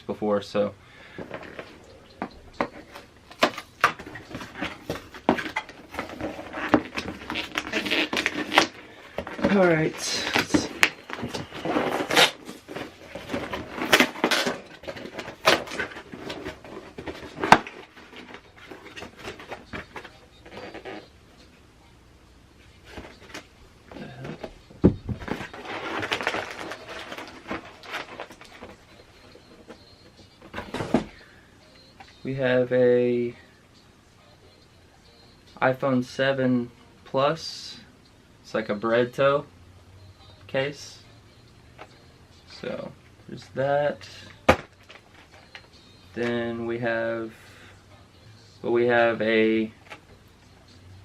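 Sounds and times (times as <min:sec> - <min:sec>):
cardboard box rustling: 0:02.6 - 0:21.0, 0:22.8 - 0:31.2.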